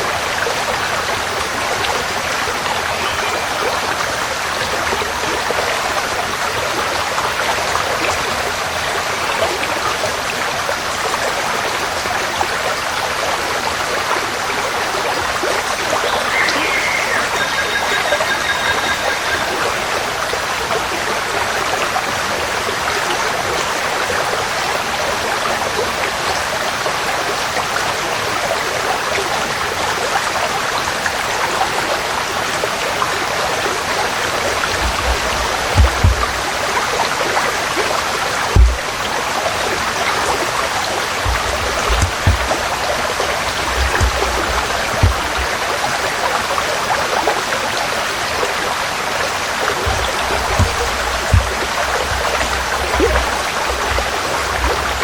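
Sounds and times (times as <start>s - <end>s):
stream flowing: 0.0s - 55.0s
bird calling: 16.0s - 19.9s.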